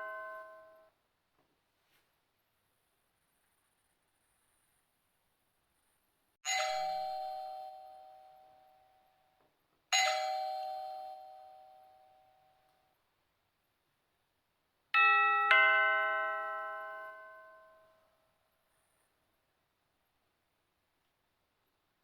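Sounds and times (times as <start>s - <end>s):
doorbell chime: 0.0s - 0.8s, 6.5s - 9.3s, 9.9s - 12.8s, 15.0s - 18.1s.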